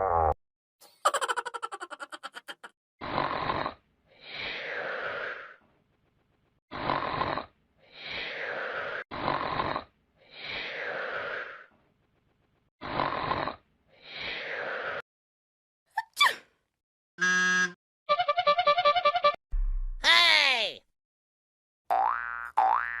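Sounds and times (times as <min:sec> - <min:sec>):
cartoon snoring: 0:03.0 - 0:05.6, 0:06.7 - 0:11.7, 0:12.8 - 0:15.0.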